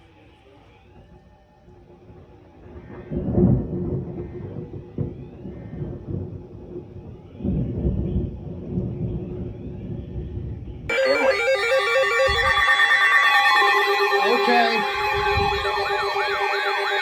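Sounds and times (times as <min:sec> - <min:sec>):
loud buzzy electronic music: 0:10.9 - 0:17.0.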